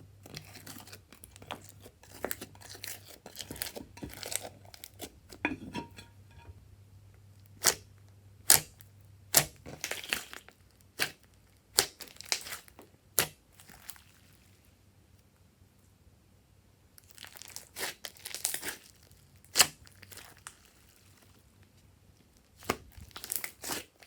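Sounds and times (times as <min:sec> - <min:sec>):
slime crackling: 0:09.3 - 0:14.3, 0:22.6 - 0:24.0.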